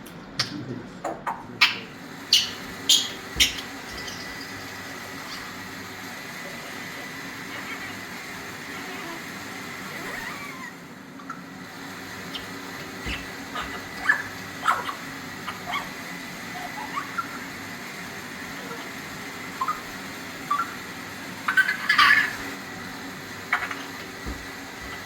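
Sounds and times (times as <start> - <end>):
parrot squeaks chirps and clicks: 1.1 - 4.6
parrot squawks: 1.1 - 5.8, 7.4 - 9.3, 12.2 - 17.6, 18.6 - 22.6.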